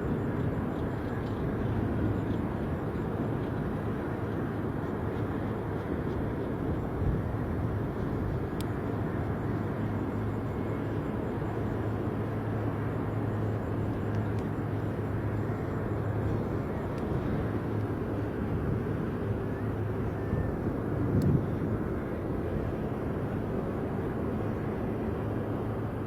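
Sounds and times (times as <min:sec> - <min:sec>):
aircraft engine rumble: 0:00.0 - 0:26.0.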